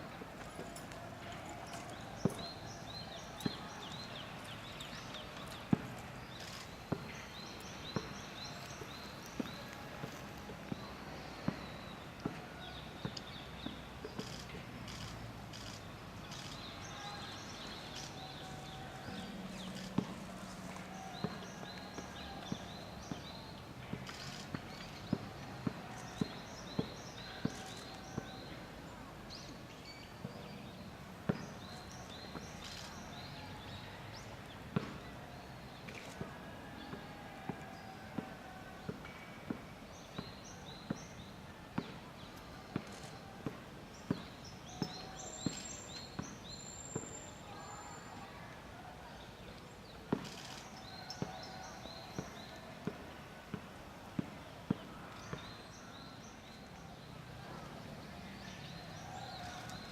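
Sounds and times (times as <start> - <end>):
small birds chirping: 1.6 - 28.7.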